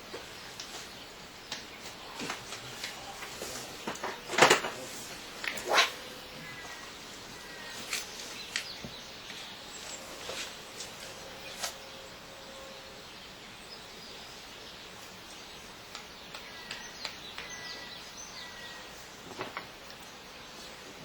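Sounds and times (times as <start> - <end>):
outdoor background noise: 0.0 - 21.0.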